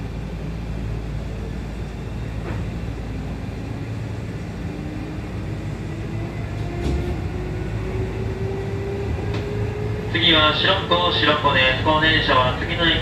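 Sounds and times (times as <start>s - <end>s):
electric train rumbling: 0.0s - 13.0s.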